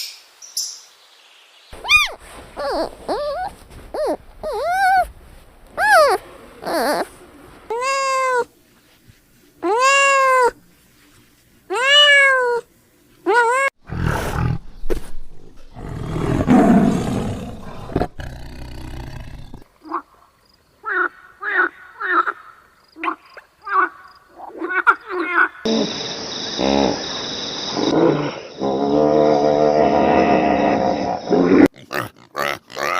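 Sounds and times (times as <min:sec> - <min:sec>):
cat meowing: 0:01.8 - 0:05.1, 0:05.8 - 0:07.1, 0:11.7 - 0:12.6
short high calls: 0:01.8 - 0:05.1
harsh noisy growl: 0:15.7 - 0:19.6.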